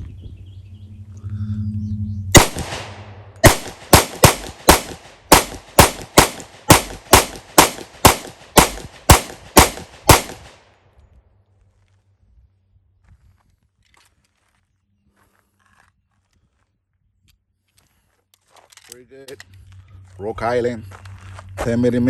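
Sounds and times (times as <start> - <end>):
pistol shots: 2.4 - 10.6.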